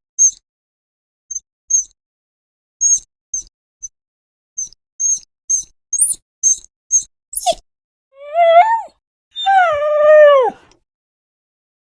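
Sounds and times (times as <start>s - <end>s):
short high squeaks: 4.6s - 7.6s
dog whining: 7.4s - 7.6s, 8.2s - 10.7s.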